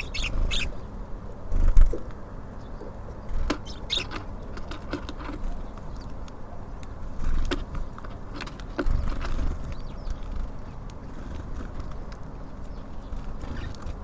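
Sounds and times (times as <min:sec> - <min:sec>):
beaks pecking at seed: 0:00.0 - 0:00.9, 0:03.4 - 0:06.4.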